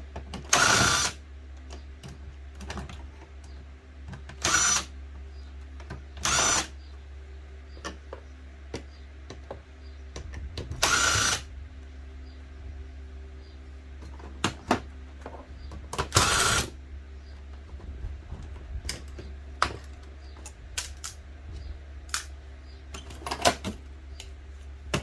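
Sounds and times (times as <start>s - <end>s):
electric screwdriver whirring: 0.5s - 1.2s, 4.4s - 4.9s, 6.2s - 6.7s, 10.8s - 11.5s, 16.1s - 16.8s
small handling clicks: 18.8s - 21.2s, 22.1s - 22.4s.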